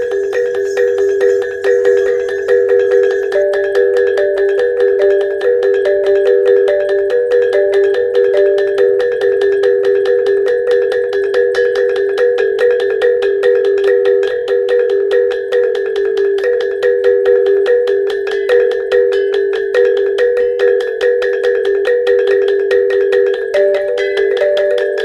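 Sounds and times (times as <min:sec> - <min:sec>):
traditional instrumental music: 0:00.0 - 0:25.0.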